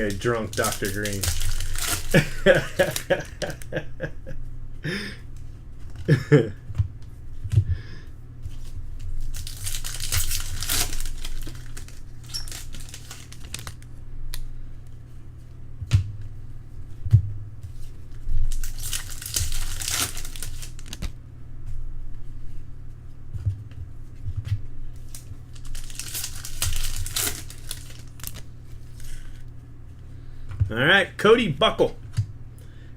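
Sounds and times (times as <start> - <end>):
wrappers torn and crinkled: 0.0 - 3.7, 9.0 - 13.9, 18.3 - 21.2, 25.0 - 29.3
steady low hum: 0.0 - 32.9.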